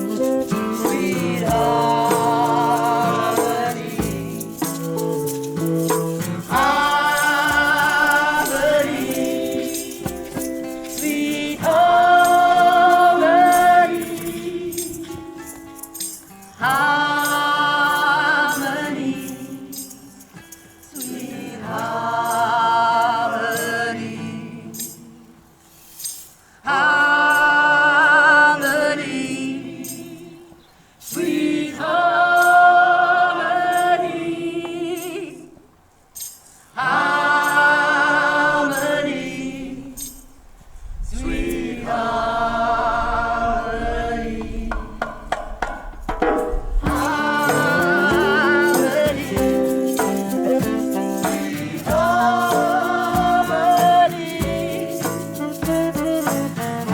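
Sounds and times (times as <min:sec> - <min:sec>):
light percussion ticks: 0:46.9 - 0:56.9
long sung phrases wavering pitch: 0:46.9 - 0:56.9.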